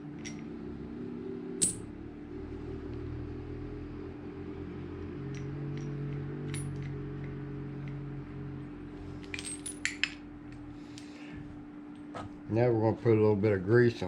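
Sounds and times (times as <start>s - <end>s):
small steel parts clinking: 0.0s - 0.6s, 1.6s - 1.9s, 5.2s - 8.1s, 9.2s - 11.1s
steady low drone: 0.0s - 14.0s.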